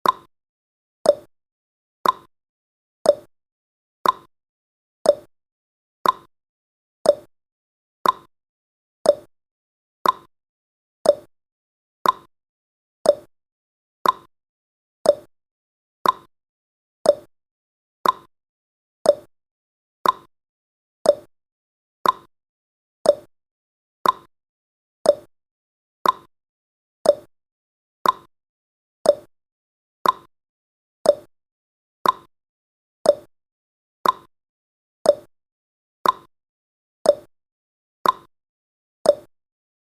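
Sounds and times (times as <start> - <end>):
timer ticking: 0.0 - 0.3, 1.1 - 1.3, 2.0 - 2.3, 3.1 - 3.3, 4.0 - 4.3, 5.1 - 5.3, 6.0 - 6.3, 7.1 - 7.3, 8.0 - 8.3, 9.0 - 9.3, 10.0 - 10.3, 11.0 - 11.3, 12.0 - 12.3, 13.0 - 13.3, 14.0 - 14.3, 15.0 - 15.3, 16.0 - 16.3, 17.0 - 17.3, 18.0 - 18.3, 19.0 - 19.3, 20.0 - 20.3, 21.0 - 21.3, 22.0 - 22.3, 23.0 - 23.3, 24.0 - 24.3, 25.0 - 25.3, 26.0 - 26.3, 27.0 - 27.3, 28.0 - 28.3, 29.0 - 29.3, 30.0 - 30.3, 31.0 - 31.3, 32.0 - 32.3, 33.0 - 33.3, 34.0 - 34.3, 35.1 - 35.3, 36.0 - 36.3, 37.1 - 37.3, 38.0 - 38.3, 39.1 - 39.3.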